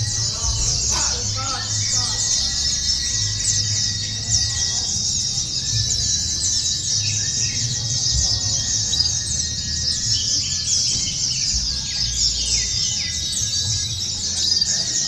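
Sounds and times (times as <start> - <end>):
low rumble: 0.0 - 10.0
birds chirping and trilling: 0.0 - 15.0.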